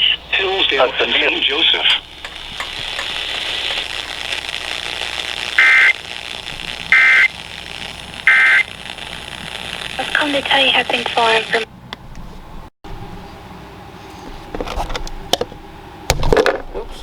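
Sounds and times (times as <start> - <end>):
radio hiss: 0.0 - 11.7
digital data tone bursts: 1.9 - 11.6.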